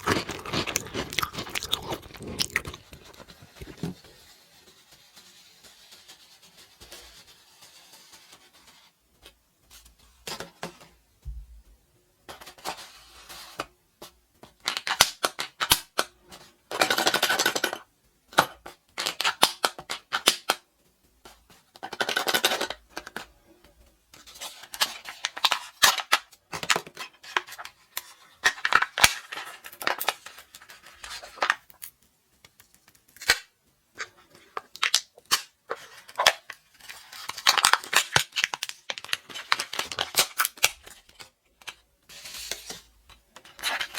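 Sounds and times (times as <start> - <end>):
candy wrappers crinkling: 0.0 - 4.2, 24.3 - 42.8.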